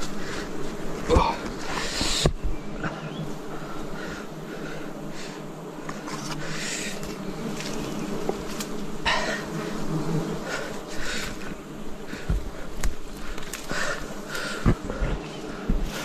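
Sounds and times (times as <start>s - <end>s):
honeybees buzzing: 0.0s - 16.0s
bursts of hiss: 1.5s - 2.6s.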